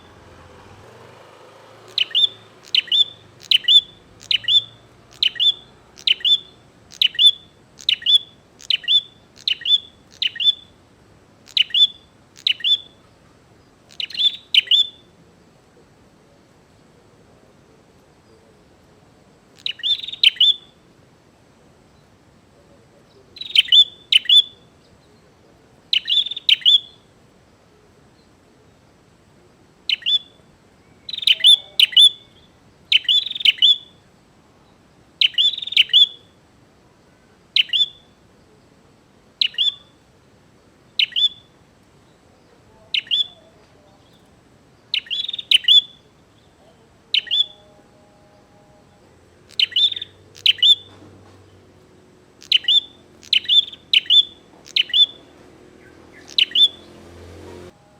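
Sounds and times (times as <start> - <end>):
bird sharp high chirps: 1.8 - 10.8, 11.4 - 13.2, 13.9 - 15.2, 19.6 - 20.8, 23.4 - 25.2, 25.9 - 27.1, 29.9 - 34.0, 35.2 - 36.4, 37.5 - 38.2, 39.4 - 40.0, 40.9 - 41.6, 42.9 - 43.4, 44.0 - 47.7, 49.4 - 51.7, 52.4 - 57.5.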